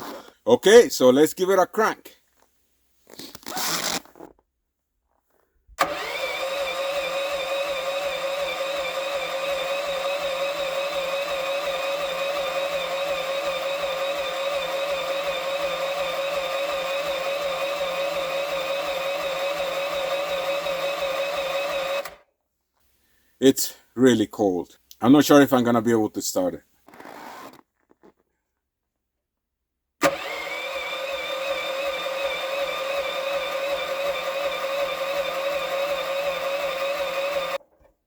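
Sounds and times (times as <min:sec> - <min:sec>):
engine starter whine: 0:05.8 - 0:22.2, 0:30.0 - 0:37.6.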